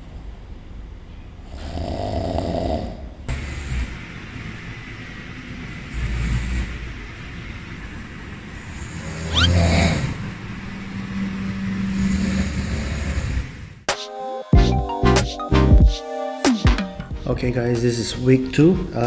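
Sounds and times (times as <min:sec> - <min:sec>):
man snoring: 0:01.6 - 0:04.0, 0:05.9 - 0:07.0, 0:12.0 - 0:13.5.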